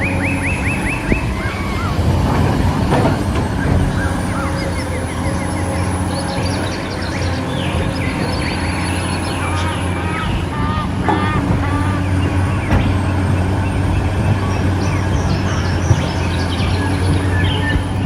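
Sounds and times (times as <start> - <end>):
low engine-like hum: 0.0 - 18.0.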